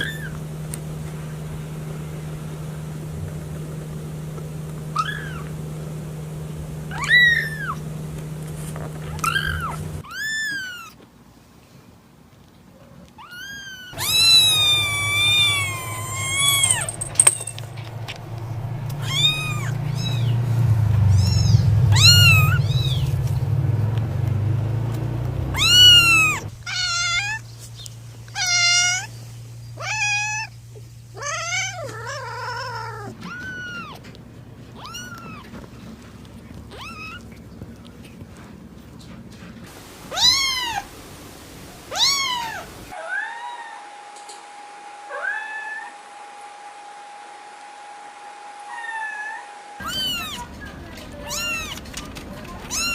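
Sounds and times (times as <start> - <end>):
kittens mewing: 0.0 - 1.8, 4.4 - 11.0, 13.2 - 23.2, 25.4 - 27.5, 28.3 - 38.0, 40.0 - 40.9, 41.9 - 43.6, 48.7 - 52.9
low steady rumble: 0.0 - 10.1, 13.9 - 43.0.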